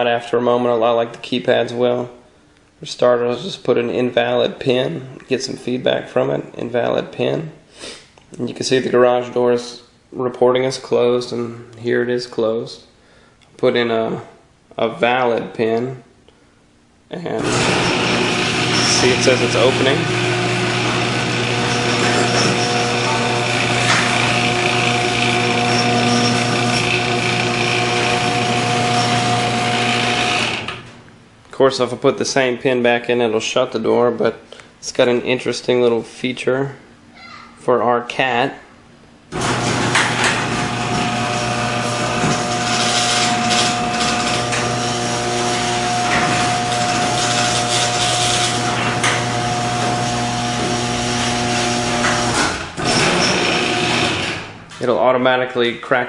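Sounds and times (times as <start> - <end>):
garage door opener motor hum: 17.4 - 31.2, 39.3 - 54.8.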